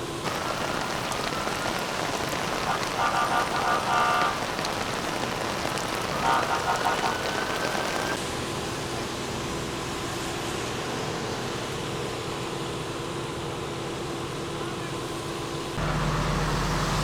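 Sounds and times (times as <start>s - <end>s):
heavy torrential rain: 0.0s - 8.2s, 15.8s - 17.0s.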